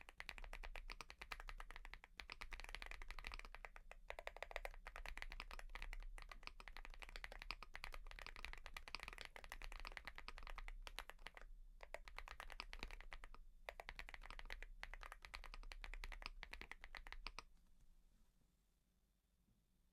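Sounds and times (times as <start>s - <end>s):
mechanical keyboard typing: 0.0s - 17.4s.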